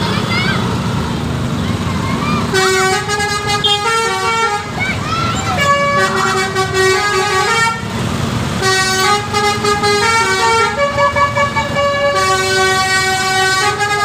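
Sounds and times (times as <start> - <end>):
bus engine rumble: 0.0 - 14.0
musical air horn melody: 2.6 - 4.7, 5.6 - 7.9, 8.6 - 14.0.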